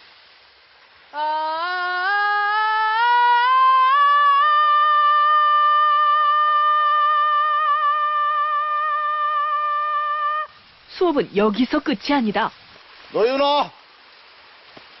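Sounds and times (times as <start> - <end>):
boy singing vocal warm-up: 1.1 - 10.5.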